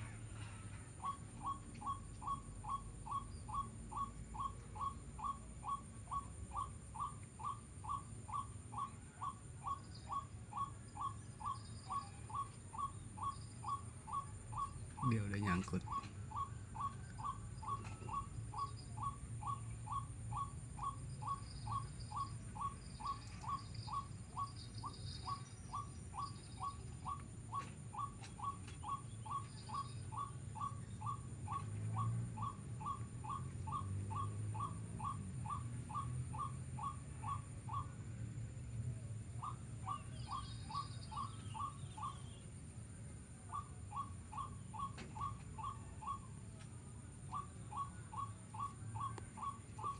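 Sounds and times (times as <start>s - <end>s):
low steady rumble: 16.0s - 49.9s.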